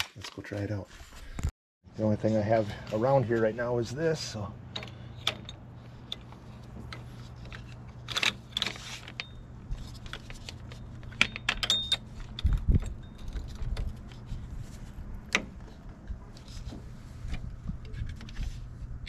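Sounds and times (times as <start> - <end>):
metal tools clinking: 10.7 - 13.7.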